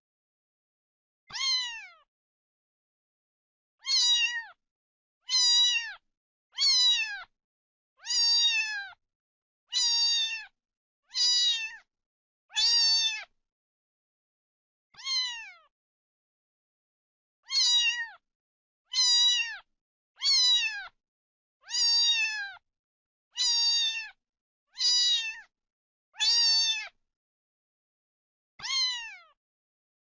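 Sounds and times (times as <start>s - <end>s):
kitten meowing: 1.3s - 2.1s, 3.8s - 4.6s, 5.3s - 6.0s, 6.6s - 7.3s, 8.0s - 9.0s, 9.7s - 10.5s, 11.1s - 11.8s, 12.5s - 13.3s, 15.0s - 15.7s, 17.4s - 18.2s, 18.9s - 20.9s, 21.6s - 22.6s, 23.4s - 24.2s, 24.8s - 25.5s, 26.2s - 27.0s, 28.6s - 29.4s.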